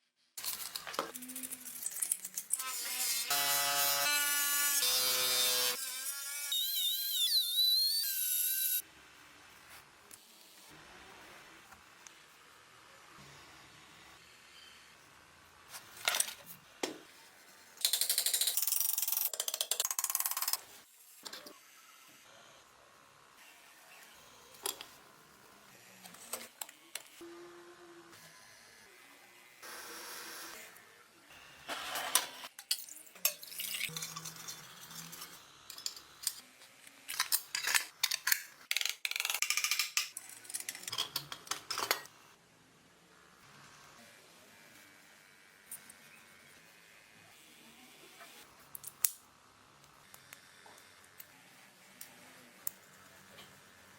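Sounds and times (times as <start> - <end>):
metal parts clinking and scraping: 0.4 - 2.7, 15.9 - 16.5, 32.6 - 42.1.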